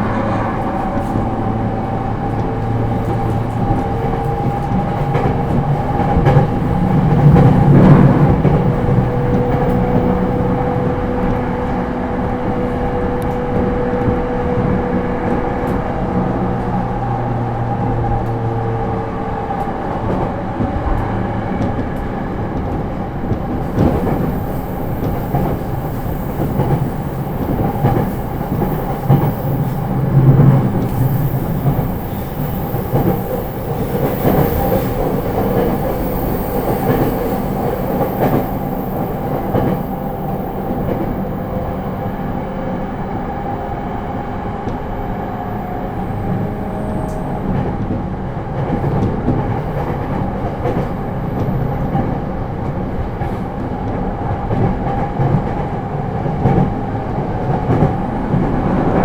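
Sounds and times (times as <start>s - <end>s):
train wheels rumbling: 0.0s - 59.0s
train motors humming: 21.9s - 51.9s.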